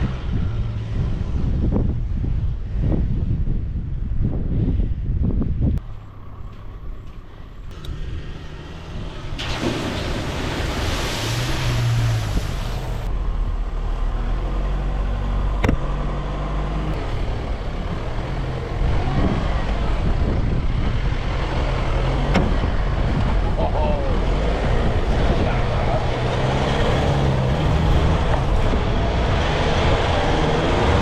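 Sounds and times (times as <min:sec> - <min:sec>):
wind on microphone: 0:00.0 - 0:06.0, 0:06.6 - 0:13.3, 0:16.9 - 0:31.0
vehicle engine running: 0:10.1 - 0:31.0.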